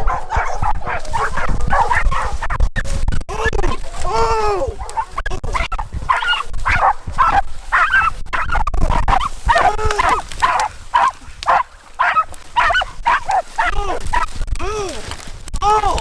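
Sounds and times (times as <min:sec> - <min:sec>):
hounds barking and yipping: 0:00.0 - 0:02.7, 0:04.6 - 0:14.4.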